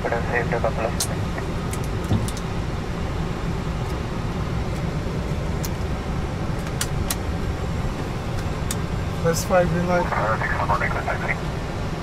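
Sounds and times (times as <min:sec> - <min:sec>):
aircraft cockpit rumble: 0:00.0 - 0:12.0.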